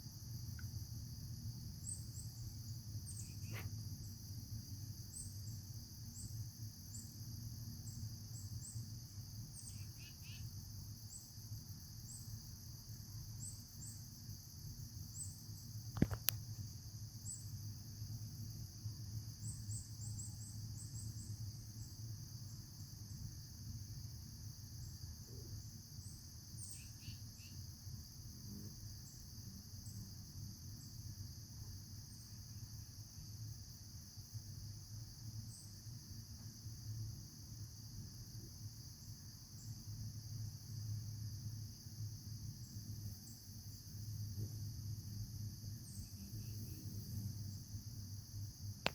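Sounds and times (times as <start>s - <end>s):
insect chorus trilling: 0.0s - 48.9s
sharp click: 15.9s - 16.4s.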